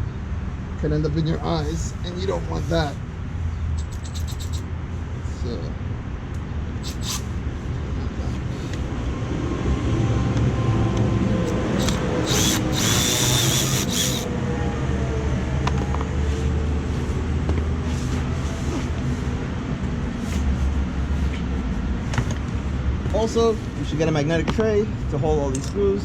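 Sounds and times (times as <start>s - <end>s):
cordless power tool running: 11.5s - 14.3s.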